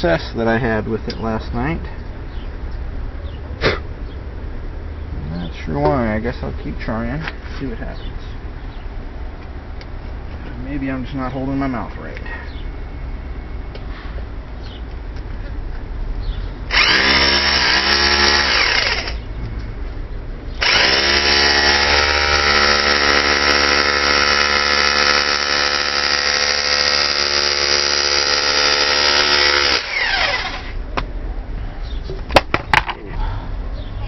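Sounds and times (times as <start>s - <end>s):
hammer drill on steel rivet: 16.7s - 19.2s, 20.6s - 30.8s.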